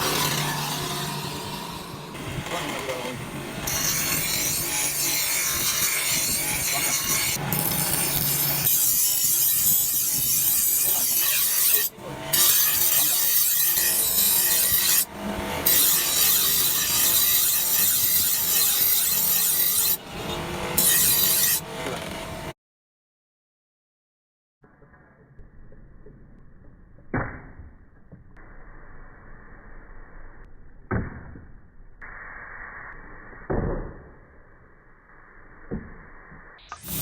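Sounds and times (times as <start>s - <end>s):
file rasping on steel: 0.0s - 22.5s, 36.8s - 37.0s.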